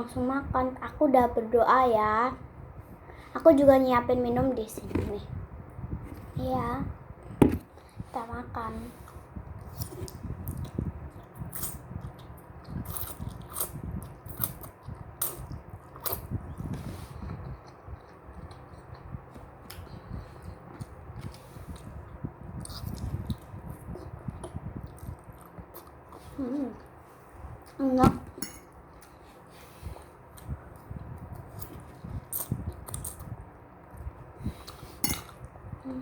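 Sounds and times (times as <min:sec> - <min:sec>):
person chewing noodles: 0:09.6 - 0:26.2.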